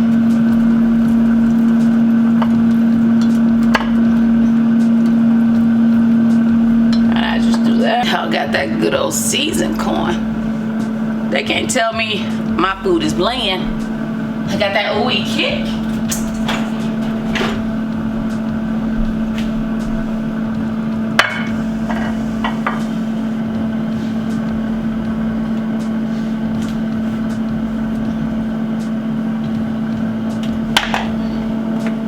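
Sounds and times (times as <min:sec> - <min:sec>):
air fryer humming: 0:00.0 - 0:32.0
kitchen clicks and knocks: 0:15.8 - 0:17.8.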